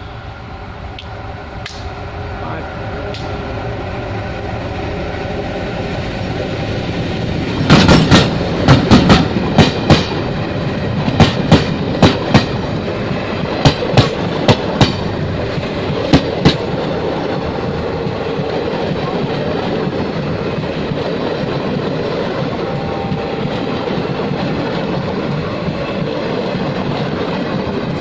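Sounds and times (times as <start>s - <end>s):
train passing rumble: 0.0s - 28.0s
train wheels clacking: 3.0s - 3.4s, 7.2s - 28.0s.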